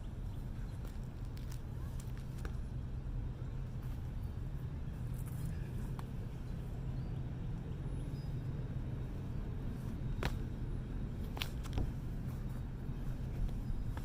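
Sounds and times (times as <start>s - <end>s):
low outdoor rumble: 0.0s - 14.0s.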